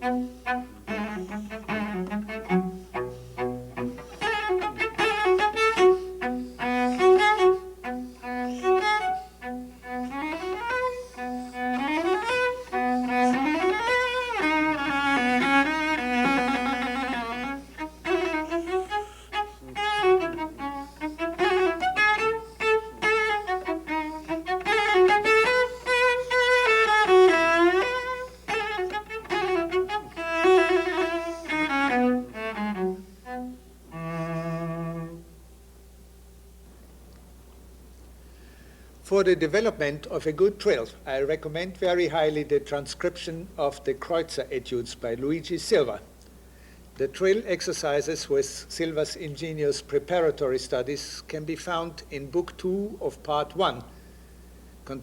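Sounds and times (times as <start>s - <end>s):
solo cello playing: 0.0s - 35.4s.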